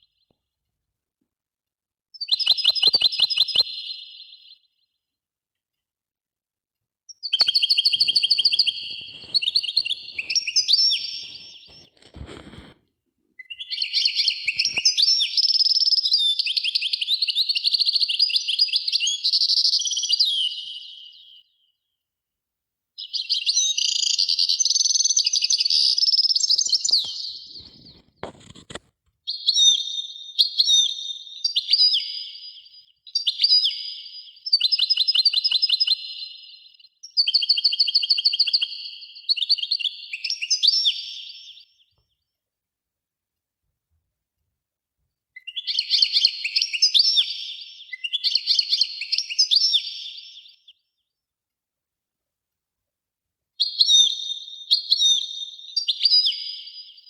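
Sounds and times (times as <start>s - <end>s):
songbird trilling and warbling: 2.2s - 4.2s.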